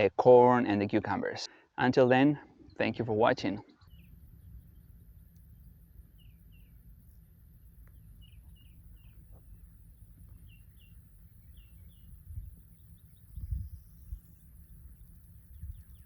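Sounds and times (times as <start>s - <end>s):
steady low rumble: 3.7s - 16.0s.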